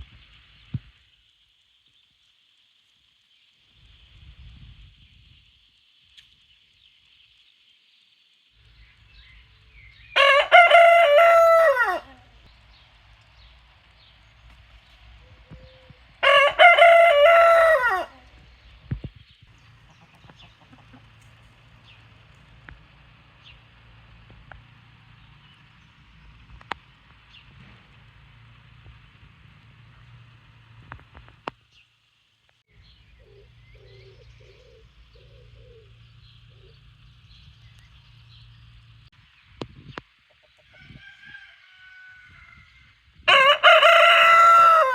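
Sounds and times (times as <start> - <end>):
rooster crowing: 10.1 - 12.3, 15.8 - 18.4, 40.6 - 44.9
faint high bird chirps: 15.2 - 16.0, 32.7 - 38.8
bird giving low calls: 33.1 - 36.9.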